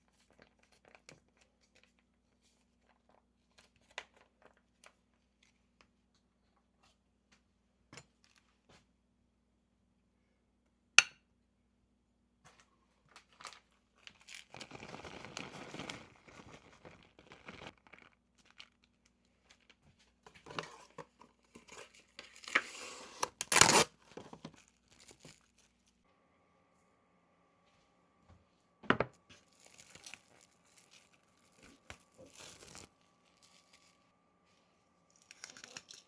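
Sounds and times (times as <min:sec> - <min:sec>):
plastic packaging crinkling and tearing: 0:13.1 - 0:19.8, 0:21.1 - 0:26.0, 0:29.3 - 0:34.1, 0:35.1 - 0:36.0
rustling: 0:13.1 - 0:22.1, 0:29.2 - 0:36.0.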